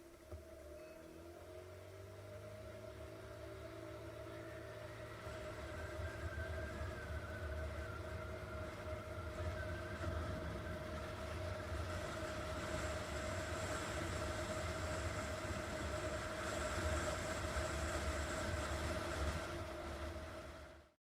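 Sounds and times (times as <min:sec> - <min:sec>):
scooter engine droning: 0:00.0 - 0:20.9
wind rumble on microphone: 0:05.2 - 0:20.8.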